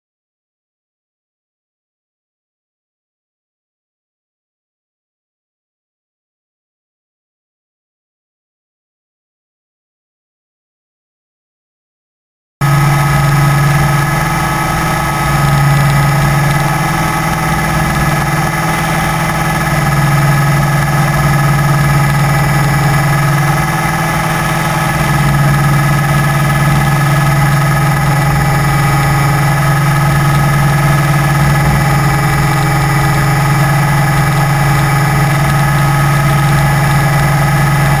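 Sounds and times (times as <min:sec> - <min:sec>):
model aircraft motor whining: 0:12.6 - 0:38.0.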